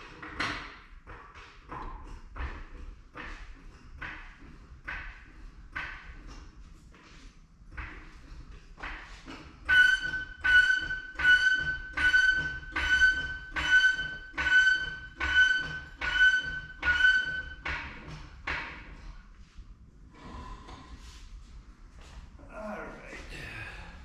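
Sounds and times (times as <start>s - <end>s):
rasping high-pitched squeak: 9.7s - 17.7s.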